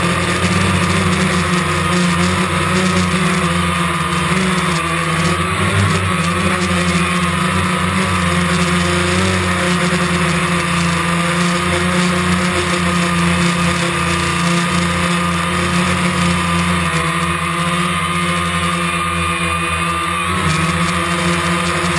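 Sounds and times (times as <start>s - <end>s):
drone propellers buzzing: 0.0s - 21.9s.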